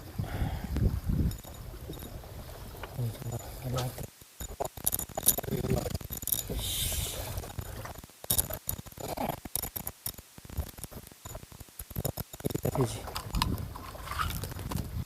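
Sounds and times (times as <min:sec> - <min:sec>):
fishing tackle clicks and rattles: 0:00.8 - 0:15.0
brief hiss: 0:06.5 - 0:07.4.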